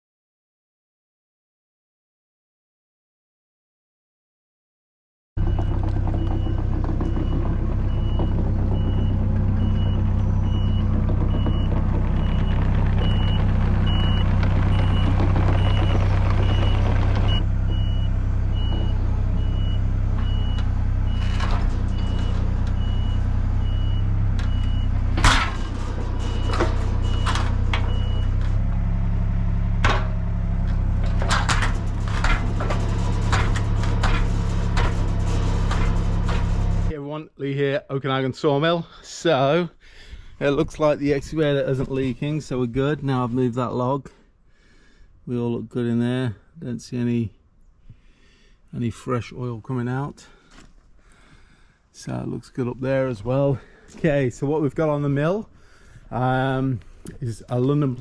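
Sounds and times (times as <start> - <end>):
knocks and clanks of machine: 5.4 - 29.1, 29.7 - 36.9
diesel engine running: 5.4 - 36.9
alarm beeping: 25.6 - 28.4.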